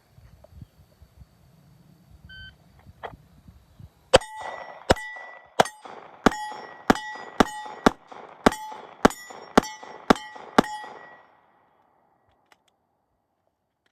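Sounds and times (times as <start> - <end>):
pistol shots: 4.1 - 11.5
steel target ringing: 4.1 - 11.6.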